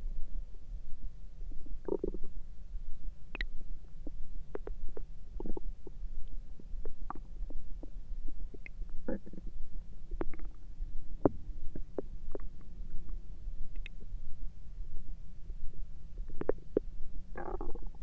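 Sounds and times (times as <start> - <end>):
stomach gurgling and rumbling: 1.5 - 2.4, 3.4 - 10.6, 11.2 - 14.1, 16.2 - 18.0.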